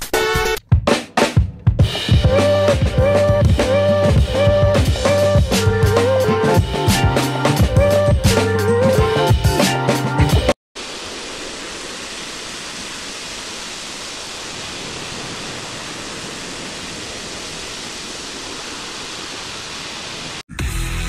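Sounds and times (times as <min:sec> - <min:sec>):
steady static hiss: 0:10.8 - 0:20.4.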